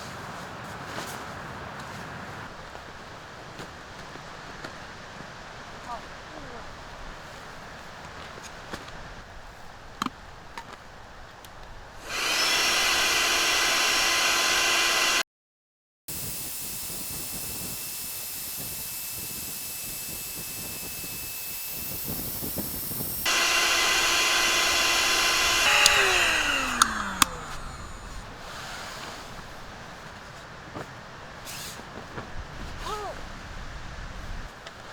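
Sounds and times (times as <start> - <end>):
small electric motor whining: 12.0 - 15.2, 16.1 - 28.5.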